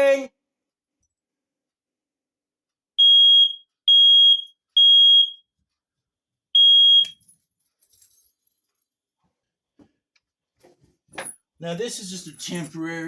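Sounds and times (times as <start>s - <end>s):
smoke alarm beeping: 3.0s - 5.5s, 6.6s - 7.2s.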